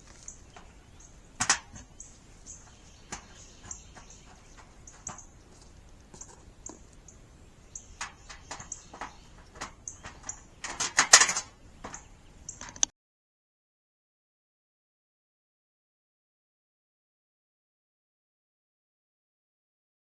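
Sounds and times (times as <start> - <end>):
metal parts clicking and knocking: 7.9 - 12.9.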